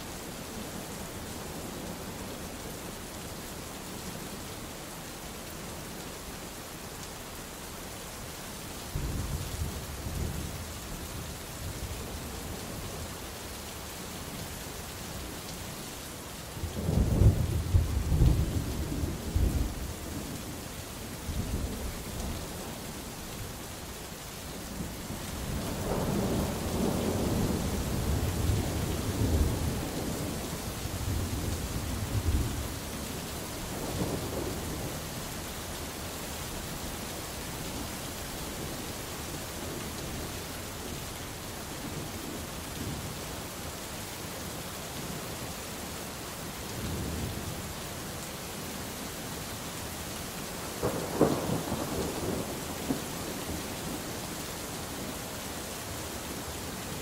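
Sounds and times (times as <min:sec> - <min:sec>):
steady rain falling: 0:00.0 - 0:57.0
thunder rumbling: 0:50.8 - 0:54.2.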